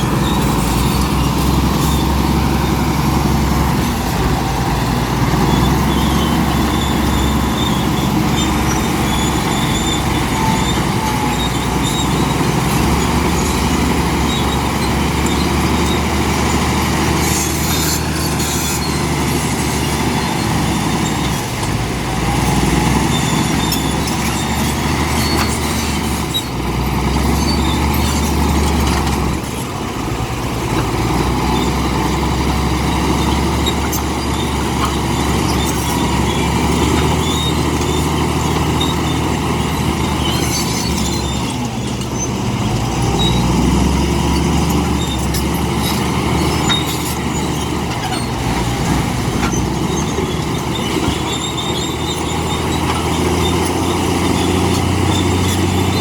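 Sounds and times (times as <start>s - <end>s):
bulldozer diesel engine: 0.0s - 56.0s.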